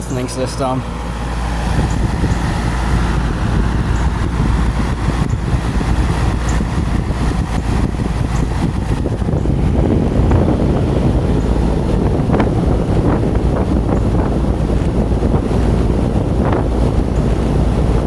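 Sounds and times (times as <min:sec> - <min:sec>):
heat pump fan and compressor drone: 0:00.0 - 0:18.0.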